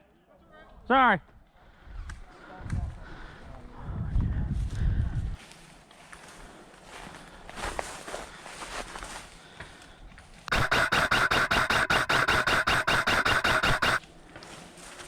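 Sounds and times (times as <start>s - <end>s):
airsoft gun full-auto burst: 10.5s - 14.0s
gearbox motor whine: 10.5s - 14.0s.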